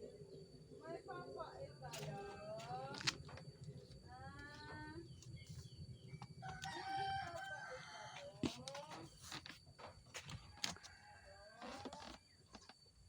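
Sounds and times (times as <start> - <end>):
rooster crowing: 6.4 - 8.5, 10.4 - 12.1.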